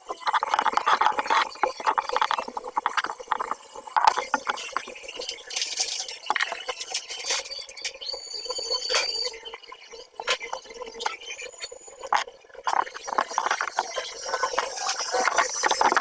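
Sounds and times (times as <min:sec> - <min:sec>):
clicks and scrapes of plumbing fittings: 0:05.4 - 0:08.0, 0:08.9 - 0:09.2.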